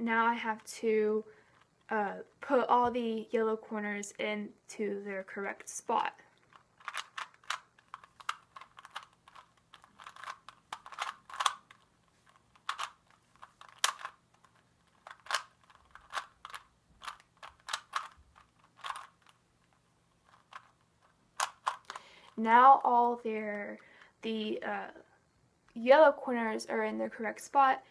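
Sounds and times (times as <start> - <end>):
puzzle cube plastic clicks: 1.4 - 1.9, 6.1 - 22.9.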